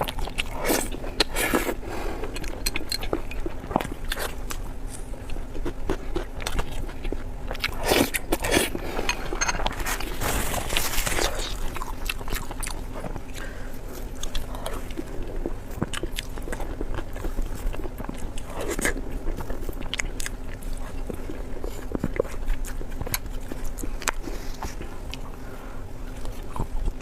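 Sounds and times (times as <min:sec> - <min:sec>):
person chewing with crunches: 0:00.0 - 0:27.0.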